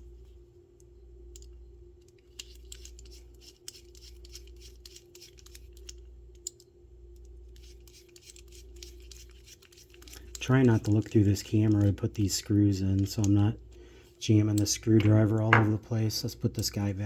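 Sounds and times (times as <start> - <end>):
steady low hum: 0.0 - 17.0
small metal clicks and scrapes: 1.4 - 13.5.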